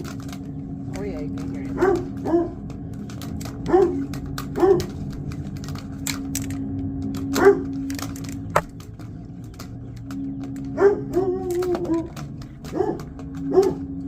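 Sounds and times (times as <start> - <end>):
machine hum: 0.0 - 14.0
sharp ticks and knocks: 0.0 - 14.0
dog barking: 1.7 - 2.6, 3.6 - 5.0, 7.3 - 7.8, 10.7 - 13.9.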